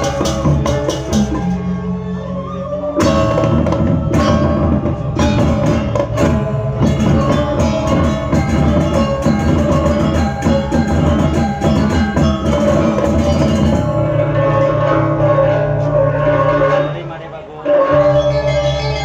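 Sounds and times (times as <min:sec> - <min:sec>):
drums: 0:00.0 - 0:19.0
gamelan playing: 0:00.0 - 0:19.0.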